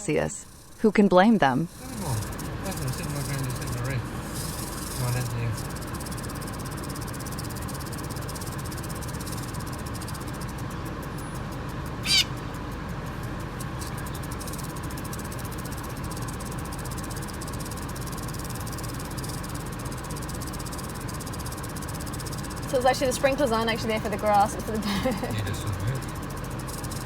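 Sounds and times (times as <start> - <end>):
steady hiss: 0.0 - 0.9, 1.6 - 12.4, 13.0 - 27.0
corella screech: 12.0 - 12.3.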